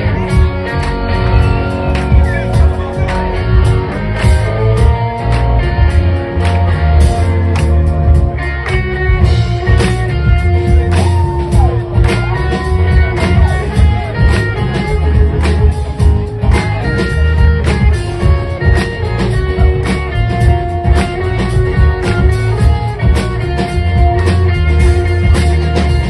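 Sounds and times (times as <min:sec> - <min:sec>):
bass guitar: 0:00.0 - 0:26.0
electric guitar: 0:00.0 - 0:26.0
steady drum beat: 0:00.0 - 0:26.0.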